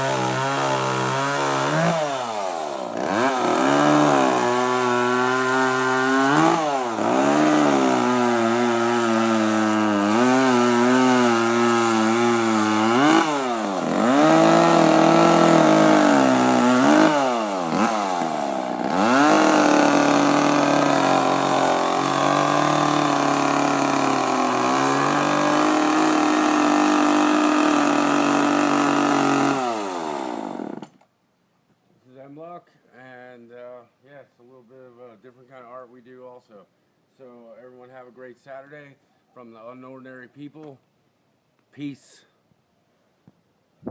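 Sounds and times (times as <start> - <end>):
chainsaw cutting wood: 0.0 - 31.1.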